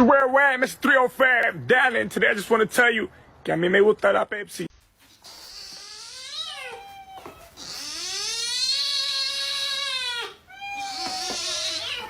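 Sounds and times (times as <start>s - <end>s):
cat meowing: 5.2s - 12.0s.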